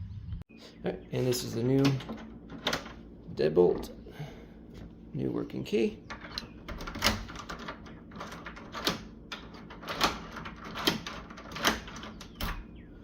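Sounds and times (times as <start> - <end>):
deadbolt metal clacks: 6.1 - 12.6.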